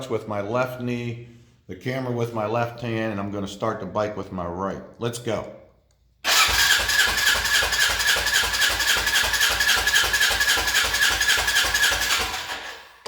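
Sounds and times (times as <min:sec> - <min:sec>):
electric starter cranking engine: 0:06.2 - 0:13.0.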